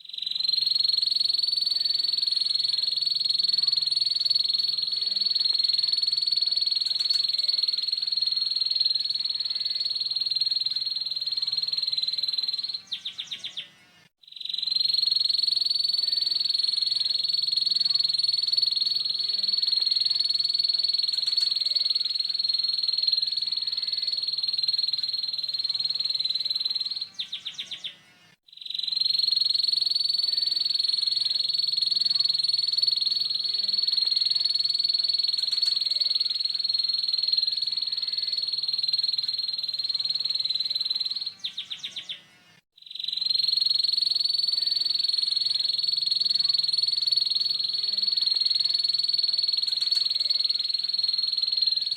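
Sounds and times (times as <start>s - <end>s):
canary singing a rapid trill: 28.6s - 42.2s, 42.8s - 51.9s.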